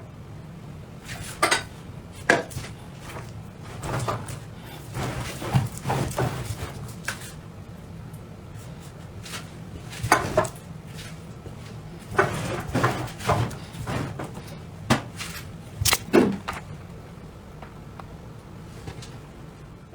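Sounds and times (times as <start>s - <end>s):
low steady hum: 0.0s - 19.9s.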